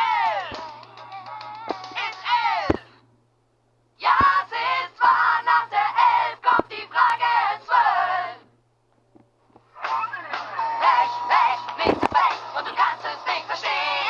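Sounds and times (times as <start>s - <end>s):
voices singing chopped phrases: 1.7s - 2.9s, 4.0s - 8.4s, 9.8s - 14.0s.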